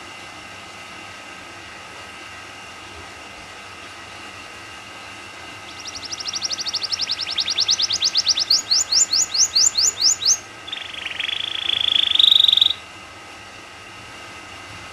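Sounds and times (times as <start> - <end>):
canary singing: 5.6 - 12.9.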